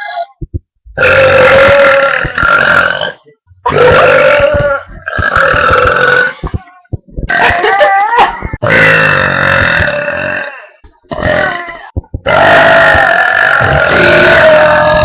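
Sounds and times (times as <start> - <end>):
girl belching: 1.0 - 6.4, 8.5 - 15.0.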